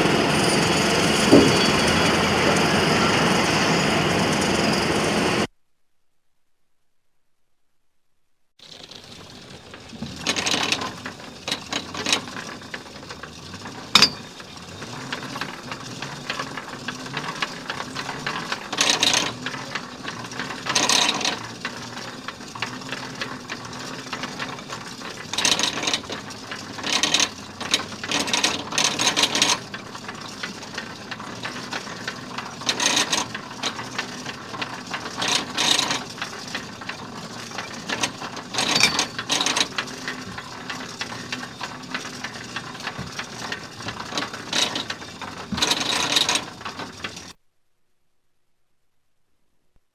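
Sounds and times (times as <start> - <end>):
factory machinery clatter and whir: 0.0 - 5.5
machinery rattling: 0.0 - 5.5, 8.6 - 47.4.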